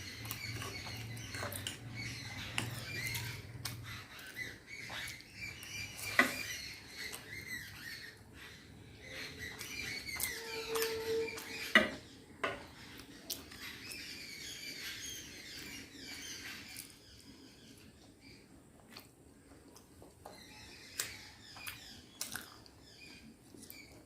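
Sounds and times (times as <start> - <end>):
wet chewing: 0.0 - 11.8, 12.6 - 14.1, 18.7 - 24.0.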